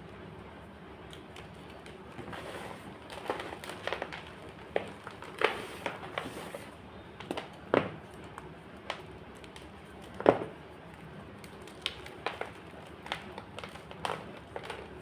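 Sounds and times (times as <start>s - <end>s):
chalk crunching: 4.8s - 6.7s.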